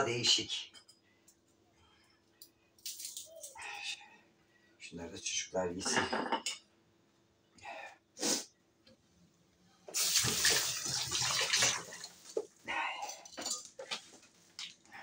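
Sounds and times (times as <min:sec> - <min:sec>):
water running from tap: 0:10.0 - 0:12.4.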